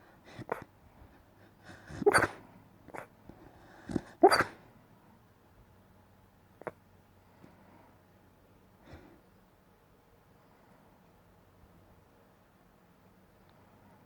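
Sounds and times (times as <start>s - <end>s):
dog barking softly: 2.0s - 3.1s, 4.0s - 4.6s.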